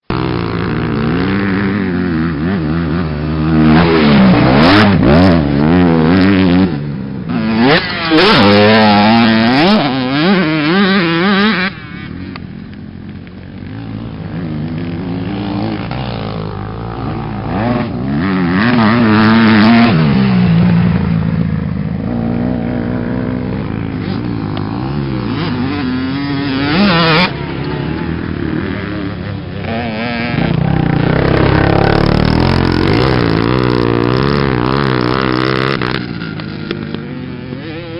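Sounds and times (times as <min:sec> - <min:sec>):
motocross bike engines revving: 0:00.1 - 0:37.9.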